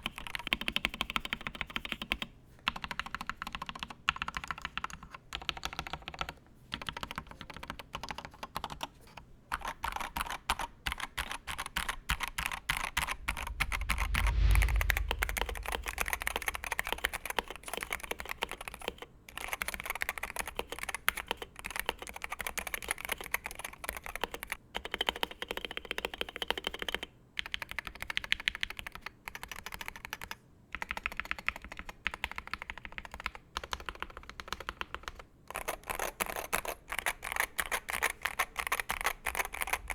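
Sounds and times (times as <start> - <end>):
deep thump: 13.0 - 17.0.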